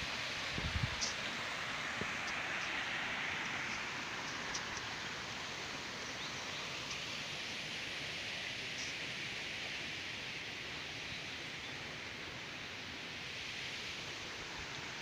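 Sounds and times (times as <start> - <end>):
stream running water: 0.0 - 15.0
faint high ticks: 3.7 - 5.0.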